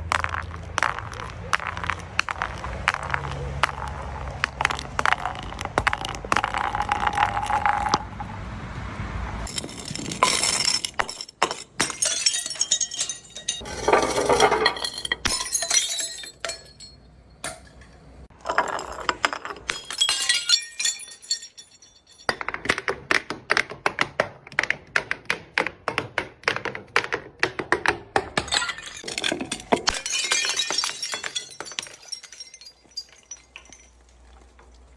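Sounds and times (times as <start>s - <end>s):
crackling crunches: 0.0s - 7.6s
glass bottles shattering: 0.1s - 8.1s, 9.5s - 22.6s, 28.4s - 34.9s
clinking glass shards: 9.5s - 22.3s, 28.5s - 34.8s.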